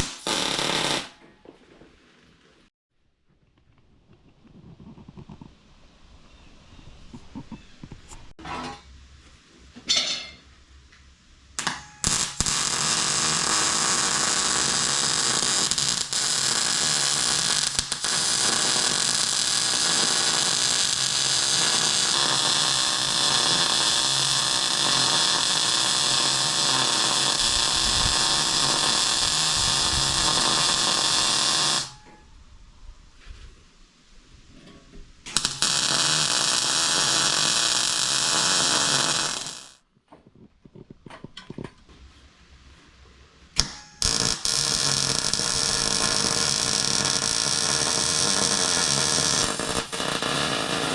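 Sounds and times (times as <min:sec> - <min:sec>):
angle grinder on steel: 0:44.0 - 0:50.9.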